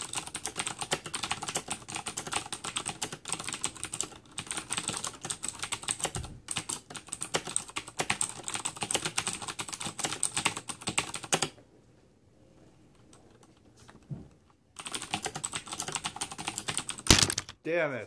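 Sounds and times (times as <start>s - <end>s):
fast mechanical keyboard typing: 0.0s - 11.6s, 14.8s - 17.5s.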